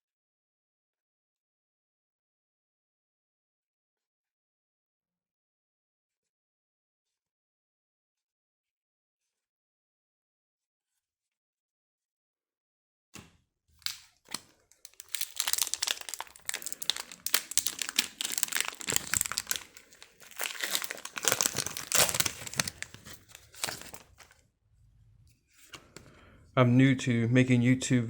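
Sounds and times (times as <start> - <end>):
foil wrapper crinkling and tearing: 13.8 - 24.4.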